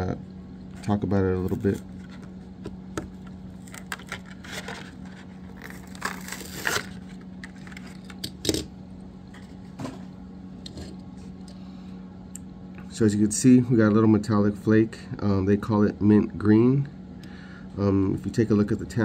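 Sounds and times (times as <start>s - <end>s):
steady low hum: 0.0s - 19.0s
plastic packaging crackling and tearing: 3.6s - 8.7s.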